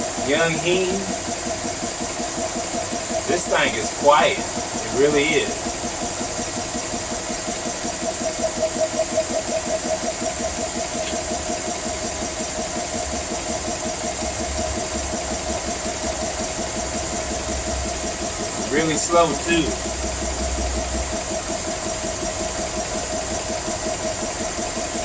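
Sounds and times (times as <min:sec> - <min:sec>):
air compressor pump pulsing: 0:00.0 - 0:25.0.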